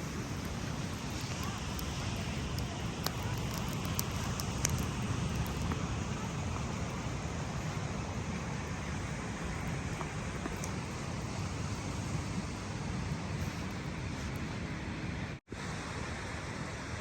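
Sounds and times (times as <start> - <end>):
wind rumble on microphone: 0.0 - 15.4
faint sharp crackles: 0.2 - 6.3.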